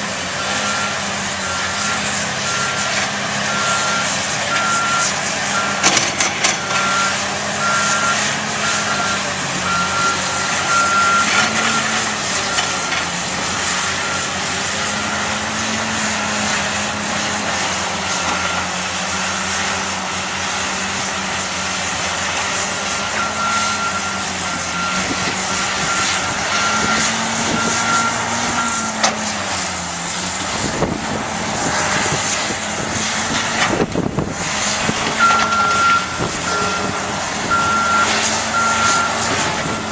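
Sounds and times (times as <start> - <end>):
diesel engines of tracked machines: 0.0 - 39.9
backup alarm beeping: 35.2 - 39.9.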